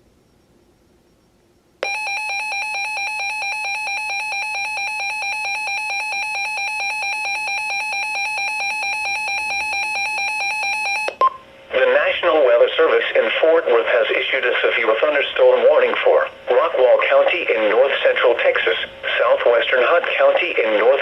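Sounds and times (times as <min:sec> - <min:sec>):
electronic alarm tone: 0:01.1 - 0:11.4.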